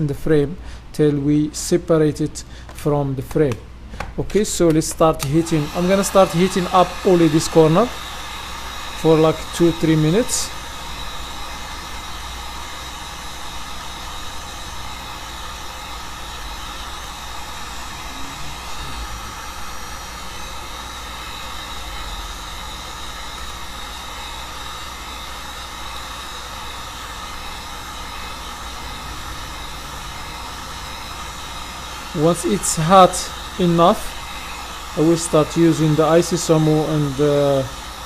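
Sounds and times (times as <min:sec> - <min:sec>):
heat gun blowing: 0:03.8 - 0:38.0.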